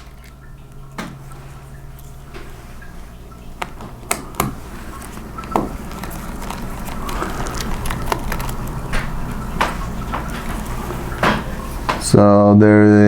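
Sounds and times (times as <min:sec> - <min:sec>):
steady low hum: 0:00.0 - 0:12.2
screwdriver clicks and taps: 0:03.6 - 0:09.0.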